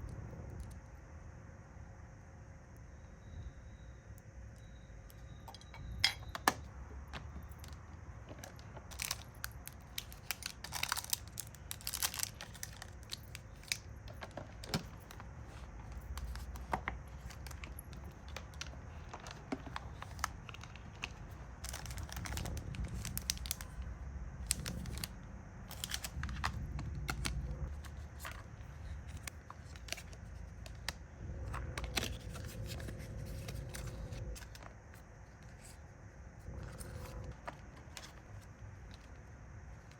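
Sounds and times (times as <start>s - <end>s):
plastic packaging crinkling: 7.5s - 23.8s, 24.4s - 34.6s.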